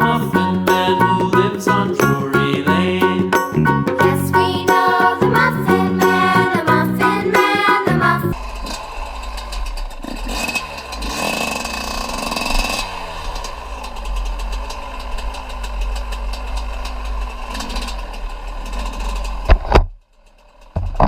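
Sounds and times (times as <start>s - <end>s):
small off-road engine revving: 8.4s - 19.6s.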